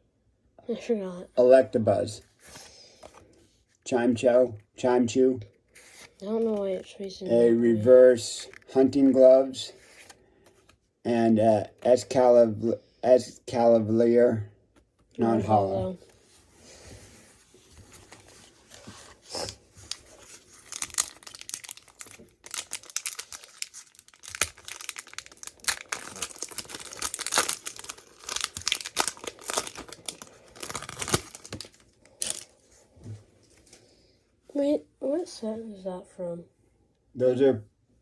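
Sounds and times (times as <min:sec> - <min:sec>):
foil wrapper tearing and crinkling: 0:19.4 - 0:32.5.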